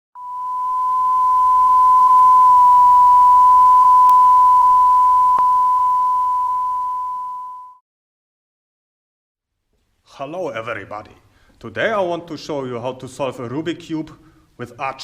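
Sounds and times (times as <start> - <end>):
steady electronic beep tone: 0.2 - 7.8.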